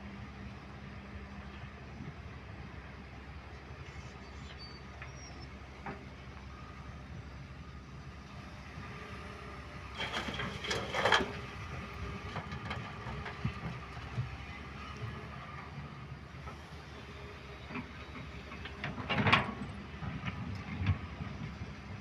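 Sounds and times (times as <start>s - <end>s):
diesel excavator engine running: 0.0s - 22.0s
clattering and scraping: 9.9s - 14.2s.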